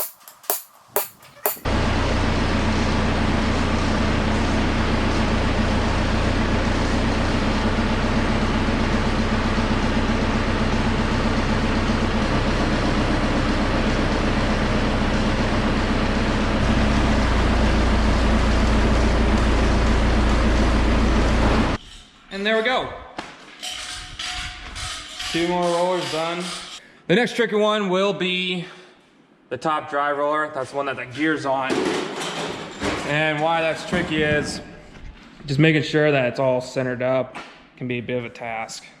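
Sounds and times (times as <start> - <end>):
engine running: 1.7 - 21.8.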